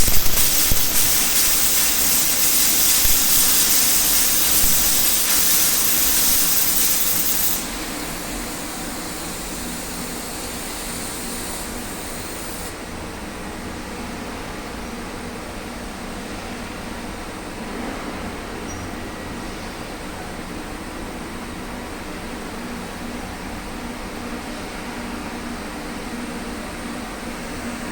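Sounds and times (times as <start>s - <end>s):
loud steady hiss: 0.0s - 12.8s.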